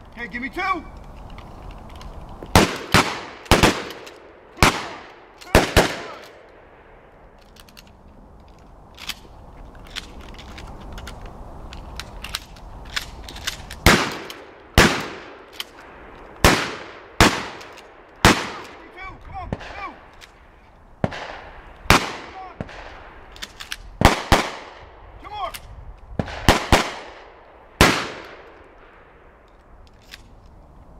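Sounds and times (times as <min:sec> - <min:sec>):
shotgun shots echoing: 0:02.5 - 0:06.5, 0:13.8 - 0:15.5, 0:16.4 - 0:18.9, 0:21.0 - 0:23.2, 0:24.0 - 0:24.8, 0:26.2 - 0:28.6.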